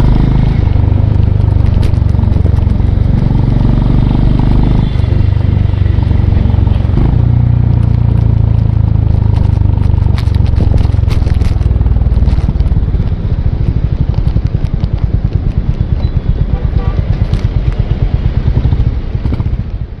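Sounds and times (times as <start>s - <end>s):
motorcycle engine running: 0.0s - 20.0s.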